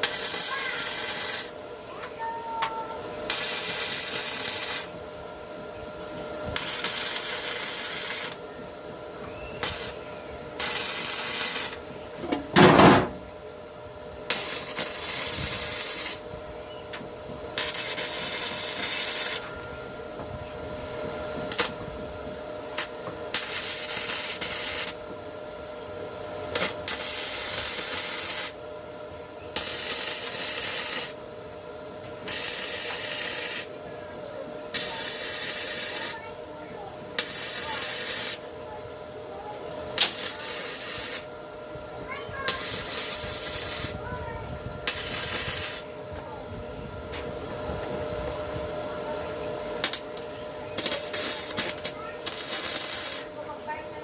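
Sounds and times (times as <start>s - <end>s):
compressed air hissing: 42.5s - 44.0s.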